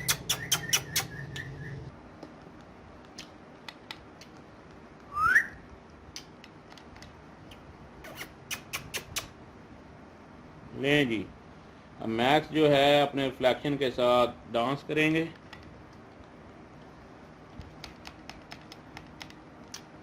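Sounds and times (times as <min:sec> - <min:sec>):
parrot rising whistle: 0:00.0 - 0:01.9, 0:05.1 - 0:05.6
light sharp clicks and taps: 0:17.5 - 0:19.9.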